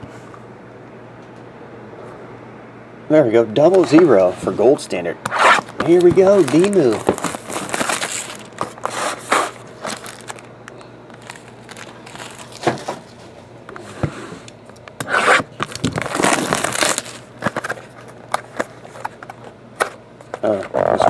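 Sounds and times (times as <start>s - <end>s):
plastic wrapping crinkling: 5.6s - 13.1s, 15.5s - 19.1s.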